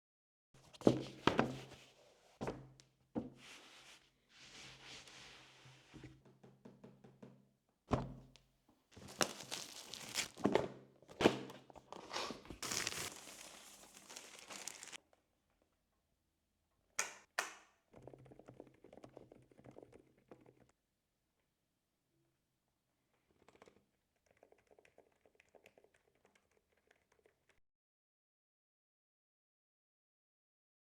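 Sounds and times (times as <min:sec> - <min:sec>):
packaging crinkling and tearing: 0:09.0 - 0:10.5, 0:11.9 - 0:15.0.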